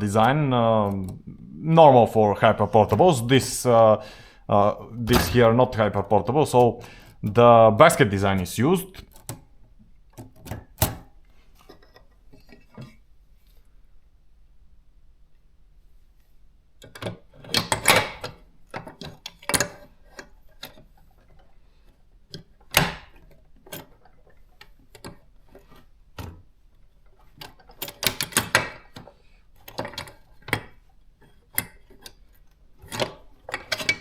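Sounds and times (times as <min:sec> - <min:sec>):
typewriter metallic clicks and knocks: 0:10.2 - 0:11.1, 0:16.8 - 0:19.8, 0:27.4 - 0:29.0.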